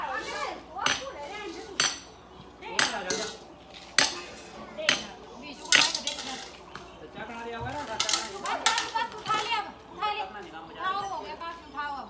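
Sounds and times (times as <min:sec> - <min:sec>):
hammer blows with metallic ring: 0:01.8 - 0:02.2.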